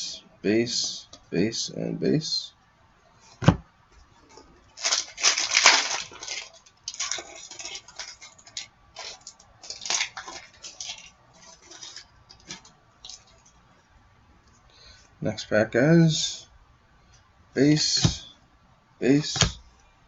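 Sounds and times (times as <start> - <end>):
cards rustling: 4.3 - 13.5
card pack wrapper crinkling: 4.7 - 13.5.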